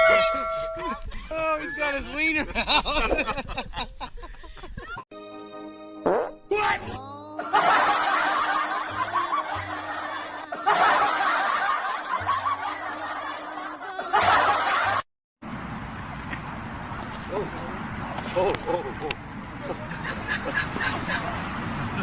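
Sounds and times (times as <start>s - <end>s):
people laughing: 0.8s - 5.0s, 7.4s - 15.0s, 18.3s - 22.0s
music: 5.1s - 14.9s.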